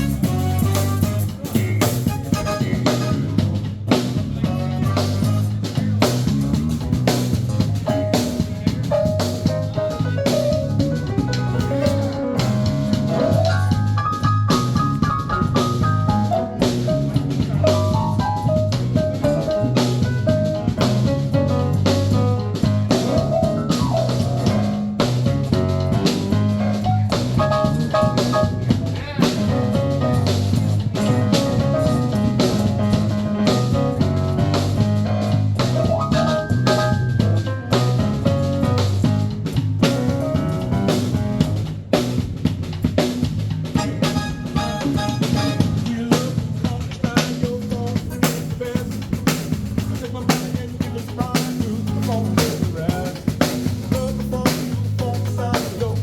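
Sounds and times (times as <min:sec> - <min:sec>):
melodic lead line: 0:00.0 - 0:03.4, 0:43.8 - 0:46.4
bass notes: 0:00.0 - 0:56.0
drum kit beat: 0:00.0 - 0:56.0.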